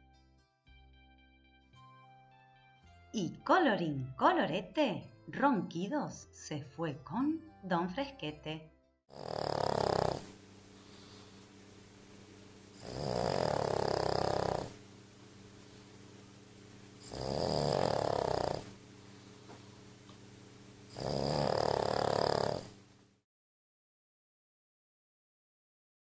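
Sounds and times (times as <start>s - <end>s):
dog snoring: 9.1s - 11.3s, 12.8s - 14.8s, 17.0s - 18.8s, 20.9s - 22.8s
faint steady hum: 9.2s - 23.2s.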